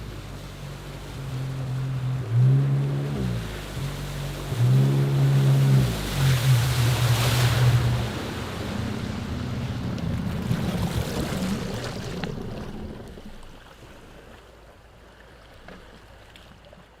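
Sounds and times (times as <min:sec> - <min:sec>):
jet ski engine: 0:00.0 - 0:16.2.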